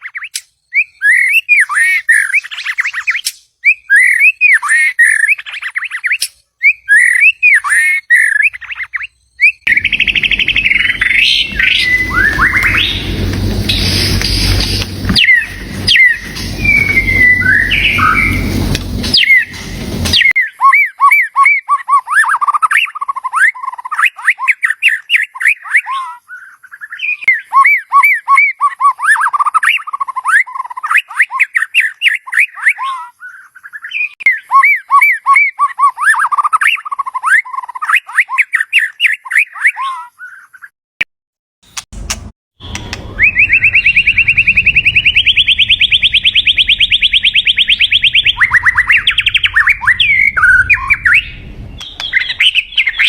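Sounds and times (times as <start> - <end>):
songbird whistling and chattering: 0.0 - 21.1, 43.1 - 53.0
steady hiss and rumble: 9.7 - 20.3, 48.9 - 52.4.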